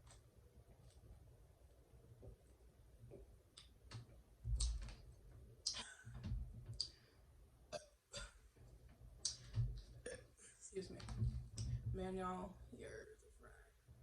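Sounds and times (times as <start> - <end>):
low thumps: 10.8 - 12.5.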